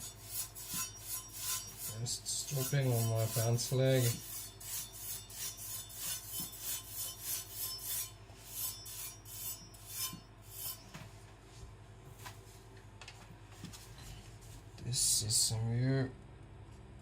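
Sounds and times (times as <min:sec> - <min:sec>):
blade rubbing on fabric: 0:00.0 - 0:11.0.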